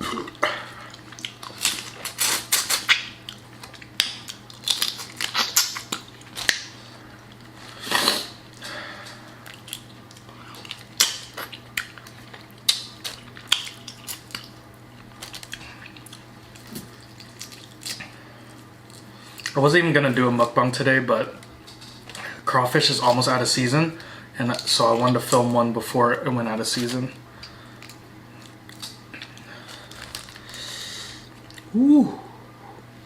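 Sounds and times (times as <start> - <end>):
shells cracking and crunching: 1.0 - 7.5, 8.6 - 19.6, 26.8 - 30.7.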